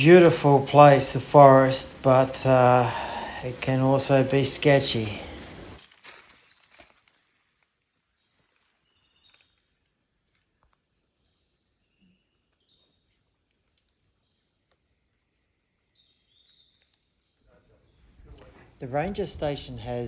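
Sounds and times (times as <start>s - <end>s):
high-pitched insect drone: 0.1s - 6.7s.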